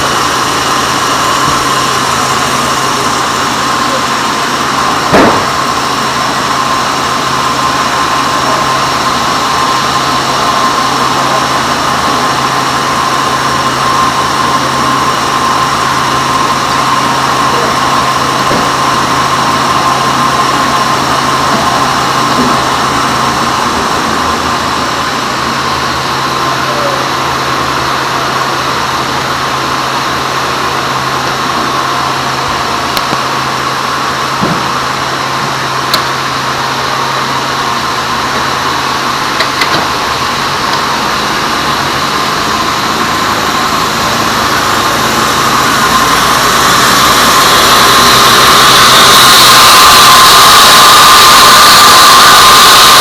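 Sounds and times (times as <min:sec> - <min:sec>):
loud knock: 0:05.1 - 0:05.8.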